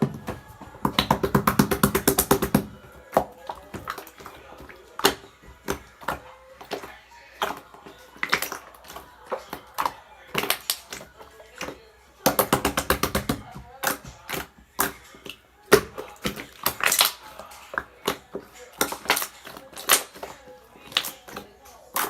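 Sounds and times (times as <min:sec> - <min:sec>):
slime wet clicks and pops: 0:08.2 - 0:17.3.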